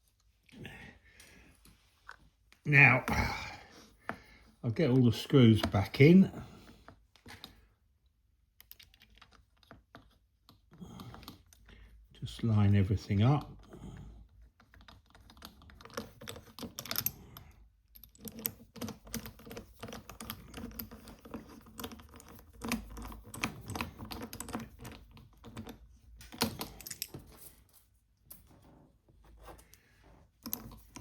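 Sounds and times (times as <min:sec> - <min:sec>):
small metal parts clicking: 0:08.6 - 0:10.2, 0:14.7 - 0:27.6.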